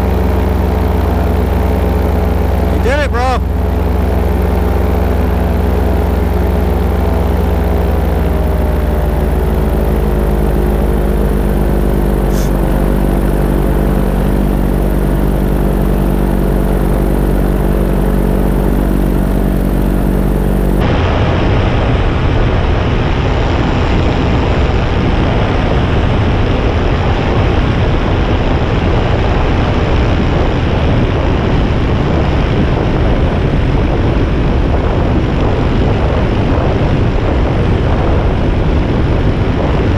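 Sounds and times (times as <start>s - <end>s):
rough rushing noise: 0.0s - 27.9s
paramotor engine and propeller: 0.0s - 39.9s.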